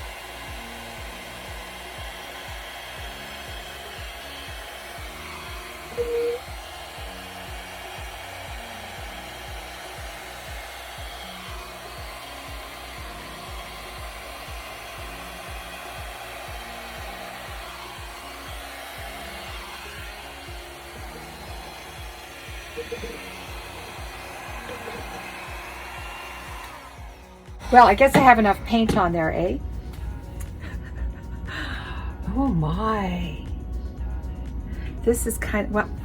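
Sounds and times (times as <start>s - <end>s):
hair dryer blowing air: 0.0s - 30.8s
soft music with low beat: 0.0s - 36.0s
short tone: 6.0s - 6.4s.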